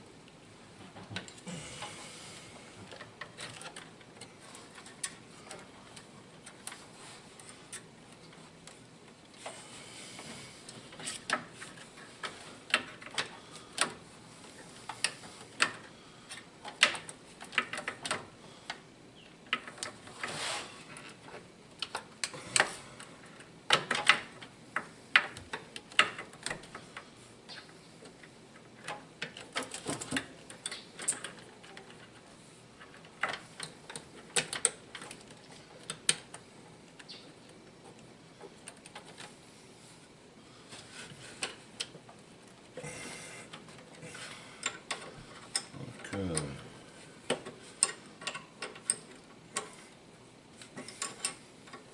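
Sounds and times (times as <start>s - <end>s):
hand tools clicking and tapping: 42.8s - 45.8s, 47.3s - 50.0s.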